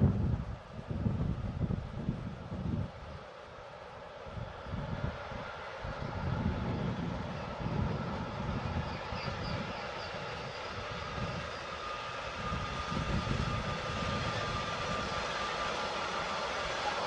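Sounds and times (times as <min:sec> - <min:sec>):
train rumbling by: 0:00.0 - 0:17.0
thin high whine: 0:07.3 - 0:17.0.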